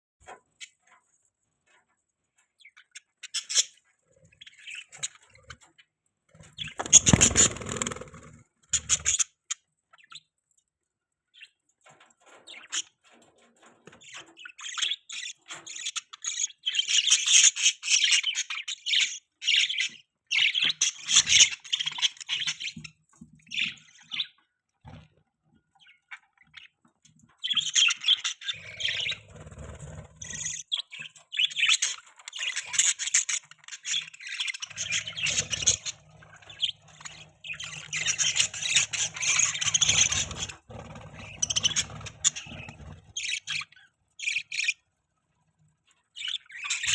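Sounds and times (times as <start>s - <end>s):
budgerigars chirping: 2.6s - 5.8s, 6.4s - 10.3s, 13.9s - 25.0s, 27.4s - 44.9s, 46.1s - 46.9s.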